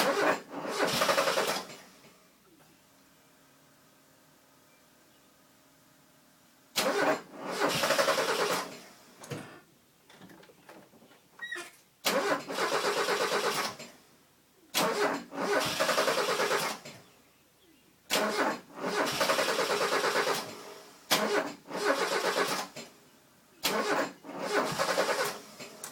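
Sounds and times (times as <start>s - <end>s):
car engine cranking by starter: 0.0s - 2.3s, 6.7s - 9.6s, 12.0s - 14.1s, 14.7s - 17.1s, 18.1s - 23.0s, 23.6s - 25.9s
sharp starter click: 18.1s - 22.9s.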